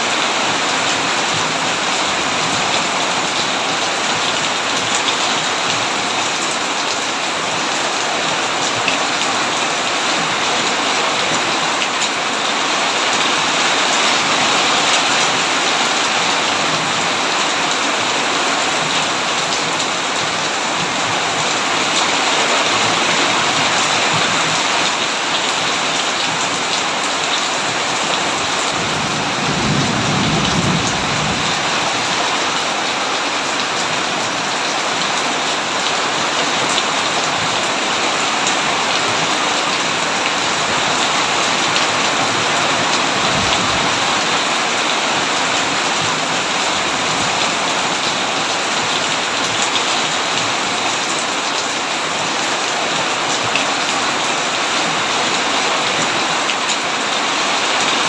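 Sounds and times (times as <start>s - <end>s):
heavy rain pouring: 0.0s - 58.0s
thunder rumble: 28.8s - 32.0s.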